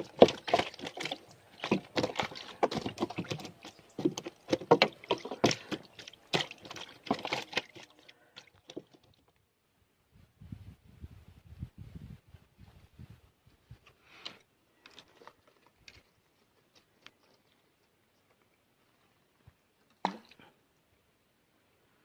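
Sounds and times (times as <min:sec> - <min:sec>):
water splashing and knocking: 0:00.0 - 0:09.2.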